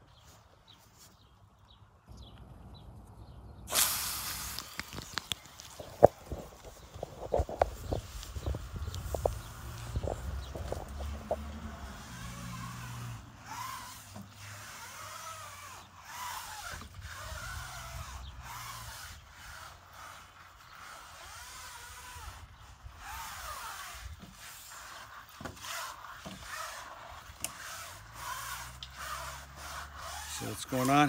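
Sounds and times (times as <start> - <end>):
brush scrubbing window screen: 4.7 - 31.0.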